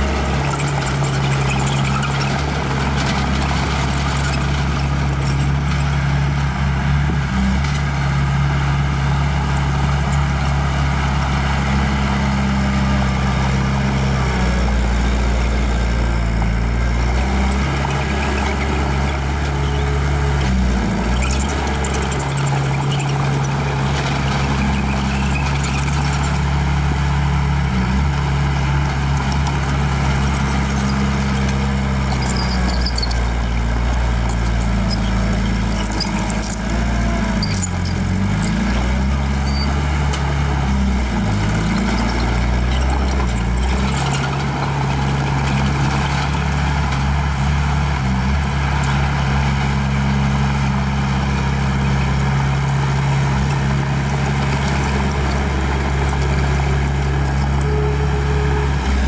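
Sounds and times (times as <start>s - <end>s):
metallic clatter and scraping: 0.0s - 5.9s
bulldozer diesel engine working: 0.0s - 59.0s.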